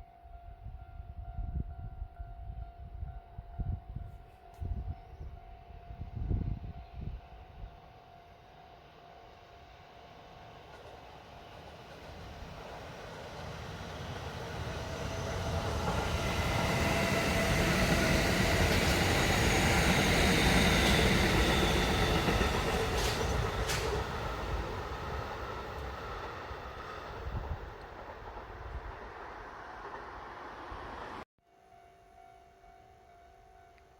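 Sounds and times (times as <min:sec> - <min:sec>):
electric train passing: 0:05.2 - 0:31.3
train wheels rumbling: 0:10.5 - 0:31.2.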